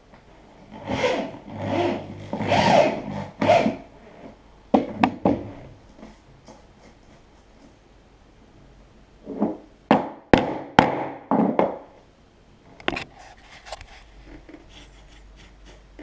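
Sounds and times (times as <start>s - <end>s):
wood scraping and rasping: 0.7s - 3.7s.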